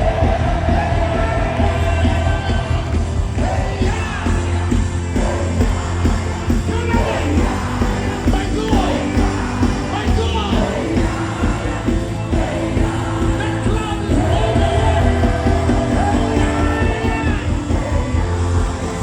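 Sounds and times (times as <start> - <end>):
worship band playing: 0.0 - 19.0.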